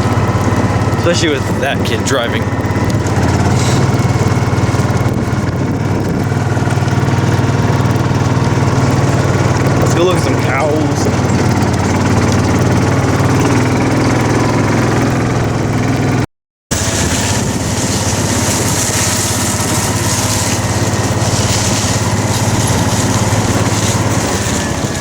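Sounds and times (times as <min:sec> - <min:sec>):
small vehicle engine running: 0:00.0 - 0:25.0
rushing hiss: 0:16.8 - 0:24.1.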